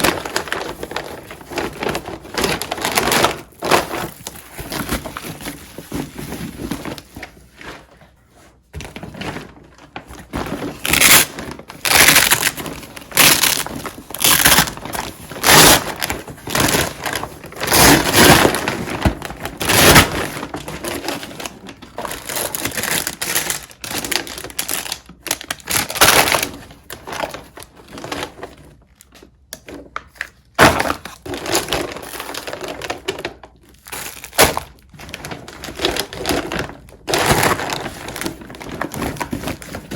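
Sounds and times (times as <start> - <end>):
crunching and crackling: 9.9 - 28.4.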